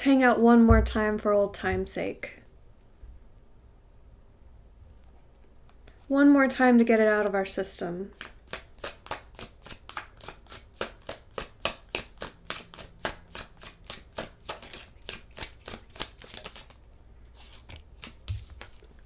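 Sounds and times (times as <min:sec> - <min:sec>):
cards being shuffled: 0:08.2 - 0:19.0.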